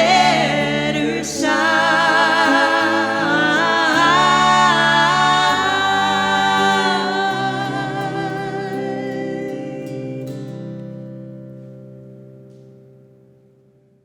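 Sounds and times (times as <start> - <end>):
women singing in harmony: 0.0 - 10.8.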